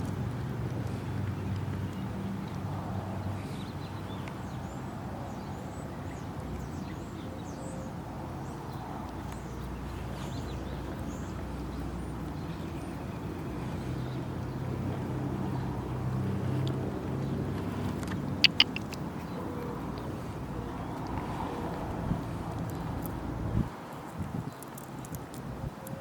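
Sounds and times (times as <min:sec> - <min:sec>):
low rumble of vehicle engines: 0:00.0 - 0:26.0
small birds chirping: 0:03.2 - 0:23.2.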